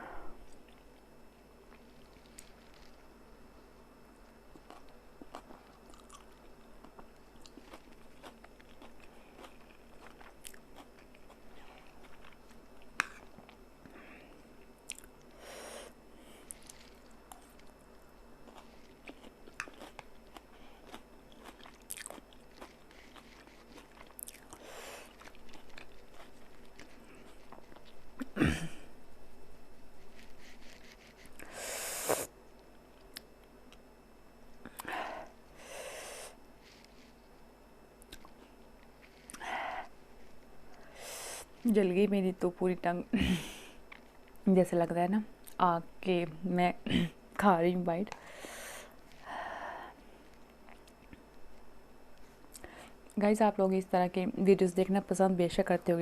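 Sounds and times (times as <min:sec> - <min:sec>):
person chewing noodles: 0:04.5 - 0:13.6, 0:14.6 - 0:28.4, 0:38.0 - 0:39.9.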